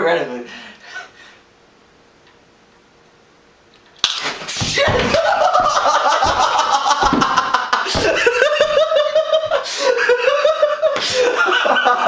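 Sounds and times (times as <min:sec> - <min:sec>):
man laughing loudly: 0:04.8 - 0:12.0.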